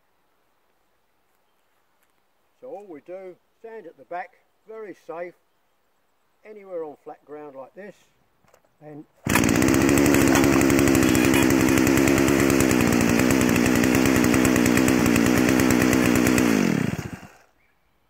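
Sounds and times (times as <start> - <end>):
chainsaw running: 9.2 - 17.5.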